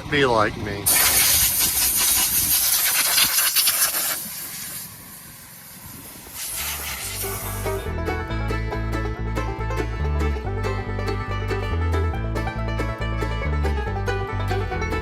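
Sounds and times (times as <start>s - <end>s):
hissing rush of air or spray: 0.9s - 7.8s.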